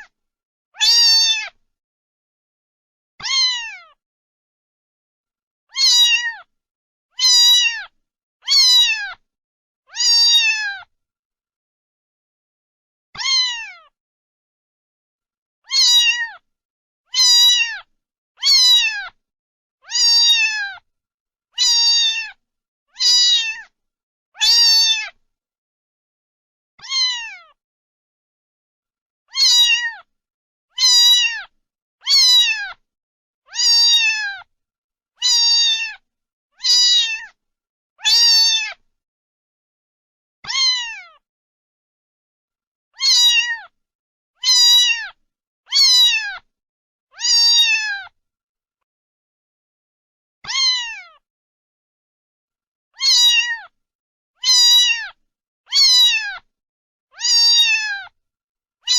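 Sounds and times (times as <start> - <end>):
cat meowing: 0.8 - 1.6, 3.2 - 4.0, 5.7 - 6.5, 7.2 - 9.2, 9.9 - 10.9, 13.2 - 14.0, 15.6 - 16.4, 17.1 - 19.2, 19.8 - 20.8, 21.6 - 22.4, 23.0 - 23.7, 24.4 - 25.2, 26.8 - 27.6, 29.3 - 30.1, 30.7 - 32.8, 33.5 - 34.5, 35.2 - 36.0, 36.6 - 37.4, 38.0 - 38.8, 40.4 - 41.2, 43.0 - 43.8, 44.4 - 46.5, 47.1 - 48.2, 50.4 - 51.2, 53.0 - 53.8, 54.4 - 56.5, 57.1 - 58.1.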